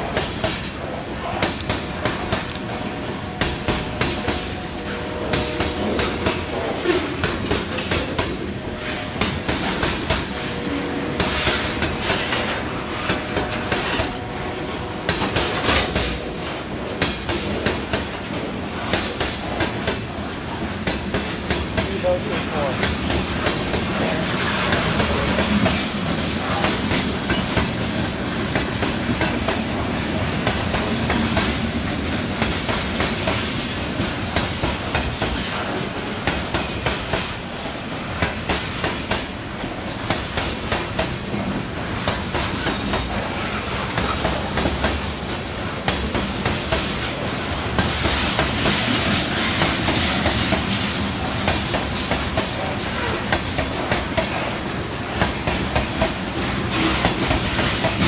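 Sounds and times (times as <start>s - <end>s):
freight train cars rolling past: 0.0s - 58.0s
wheels clicking over rail joints: 5.3s - 8.6s.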